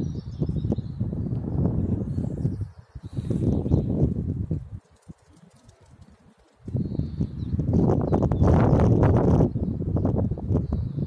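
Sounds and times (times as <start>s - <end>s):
strong wind buffeting microphone: 0.0s - 11.0s.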